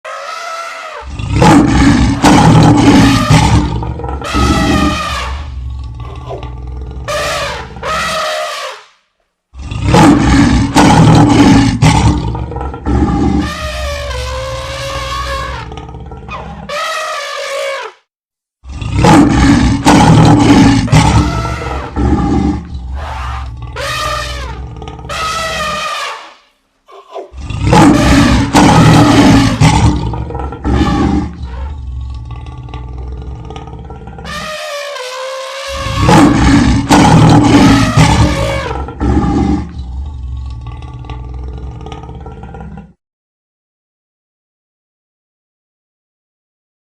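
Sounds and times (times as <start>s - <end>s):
pitched animal call: 0.0s - 6.5s, 13.4s - 15.7s, 20.4s - 22.2s, 22.9s - 29.6s, 34.2s - 38.8s
loud rough roar: 18.7s - 25.1s, 27.4s - 34.4s, 35.7s - 42.1s.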